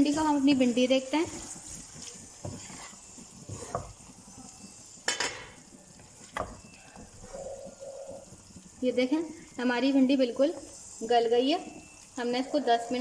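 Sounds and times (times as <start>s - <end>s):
utensil scraping a pan: 0.0s - 4.0s
faint sizzling: 0.0s - 13.0s.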